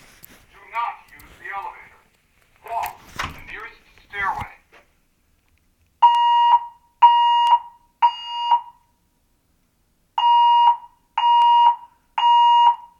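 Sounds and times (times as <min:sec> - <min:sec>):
fire alarm beeps: 0:06.0 - 0:08.9, 0:10.2 - 0:12.9.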